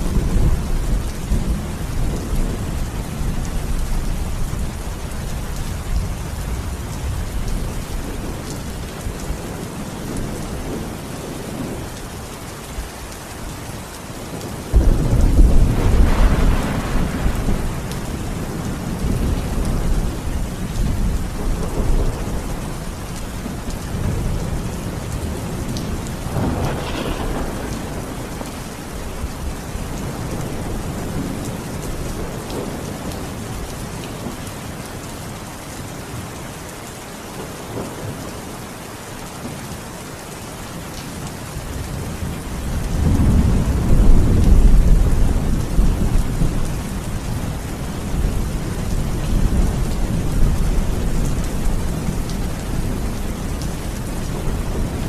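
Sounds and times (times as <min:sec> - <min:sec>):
heavy rain: 0:00.0 - 0:55.0
thunder rumbling: 0:14.4 - 0:34.3, 0:41.9 - 0:55.0.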